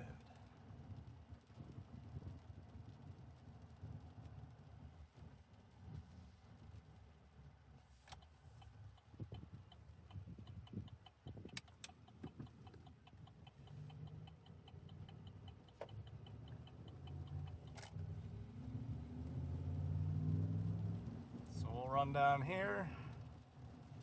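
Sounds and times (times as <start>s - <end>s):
turn signal ticking: 8.0s - 24.0s.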